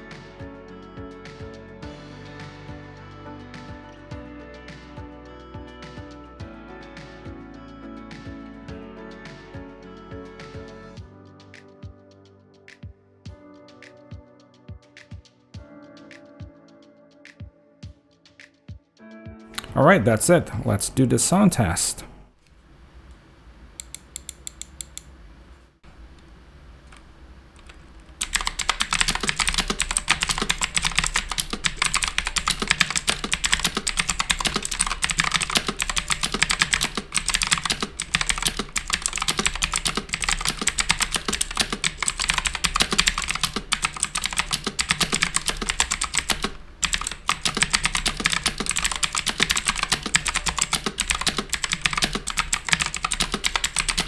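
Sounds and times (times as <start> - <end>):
clicky mechanical keyboard typing: 23.8 - 25.1, 26.9 - 54.0.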